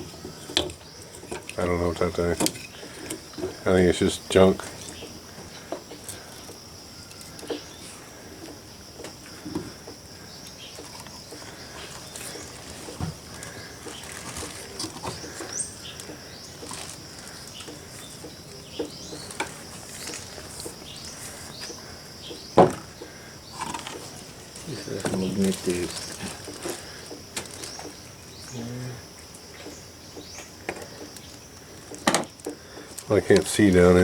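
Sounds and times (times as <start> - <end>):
steady high hiss: 0.0 - 34.0
bird chirps: 10.3 - 23.6.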